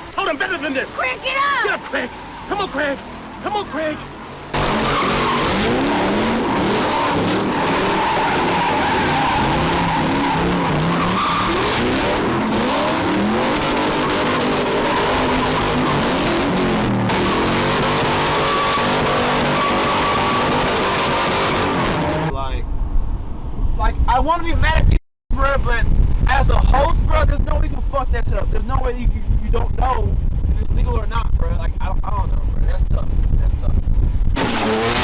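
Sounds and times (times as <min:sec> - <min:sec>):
car engine revving: 0:00.0 - 0:22.3, 0:34.3 - 0:35.0
tyres screeching: 0:00.0 - 0:22.3.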